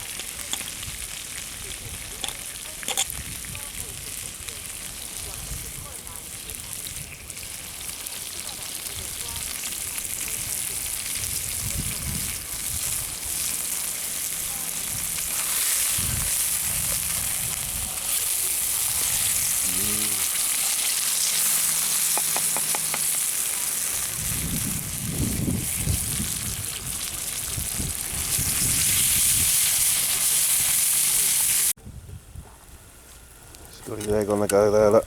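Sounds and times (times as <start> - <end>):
meat sizzling in a pan: 0.0 - 31.8.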